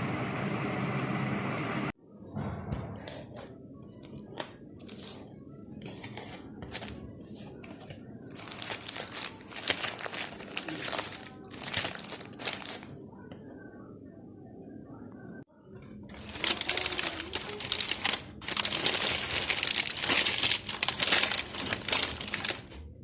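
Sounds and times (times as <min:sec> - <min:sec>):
packaging crinkling and rustling: 0:05.8 - 0:13.0, 0:16.1 - 0:22.8.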